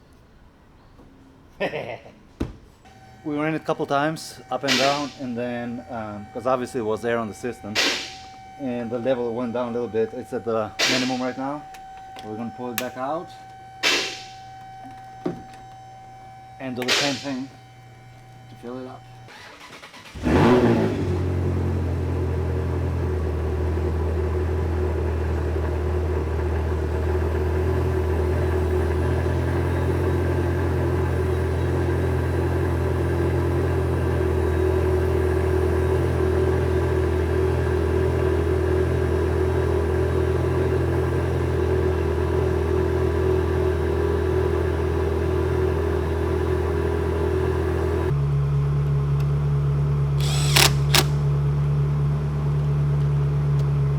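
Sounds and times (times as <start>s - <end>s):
car engine idling: 2.6s - 53.9s
car engine starting and revving: 2.9s - 14.8s, 15.5s - 53.9s.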